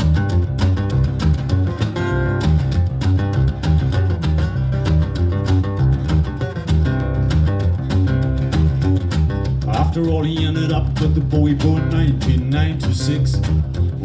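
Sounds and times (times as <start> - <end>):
deep repeating bass line: 0.0 - 14.0
guitar riff with effects: 0.0 - 14.0.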